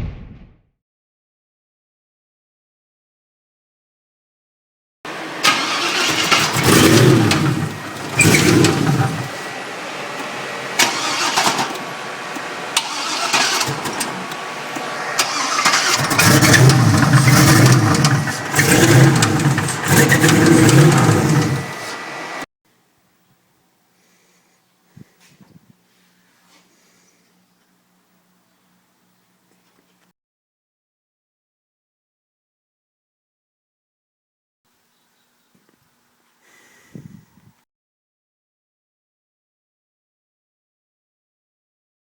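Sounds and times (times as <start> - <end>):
engine revving with rod knock: 5.4 - 9.5, 10.1 - 22.4.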